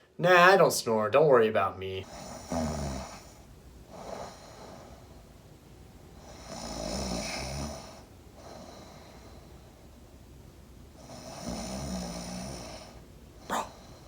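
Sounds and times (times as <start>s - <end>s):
man snoring: 2.0s - 5.1s, 6.2s - 9.3s, 11.0s - 14.0s.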